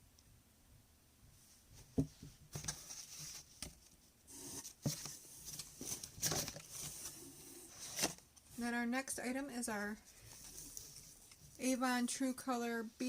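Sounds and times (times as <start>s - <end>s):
packaging rustling: 4.6s - 8.3s.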